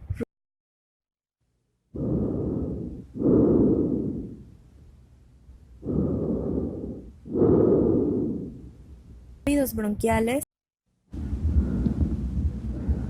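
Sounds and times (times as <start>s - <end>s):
tracheal breathing: 1.9s - 4.6s, 5.8s - 8.8s, 11.2s - 13.0s.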